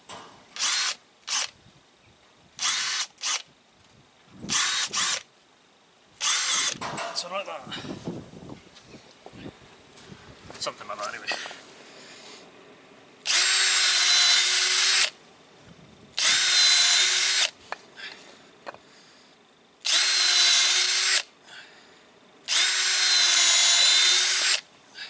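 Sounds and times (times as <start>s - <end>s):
electric power drill running: 0.6s - 1.5s, 2.6s - 3.4s, 4.5s - 5.3s, 6.2s - 6.8s, 13.2s - 15.2s, 16.2s - 17.6s, 19.8s - 21.3s, 22.5s - 24.6s.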